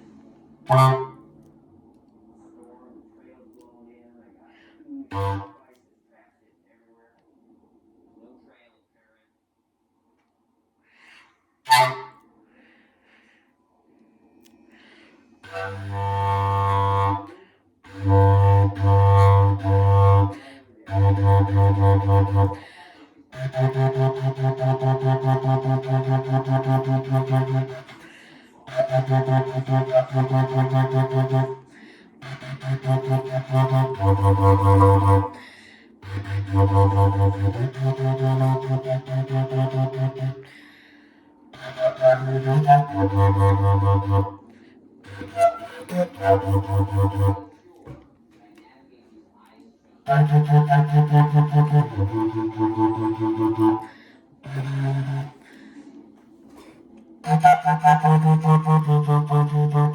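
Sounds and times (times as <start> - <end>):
low wind instrument playing: 0.7 - 1.3, 5.0 - 5.7, 11.7 - 12.2, 15.4 - 22.7, 23.3 - 28.1, 28.7 - 35.4, 36.0 - 40.5, 41.6 - 47.5, 50.1 - 55.4, 57.2 - 59.9.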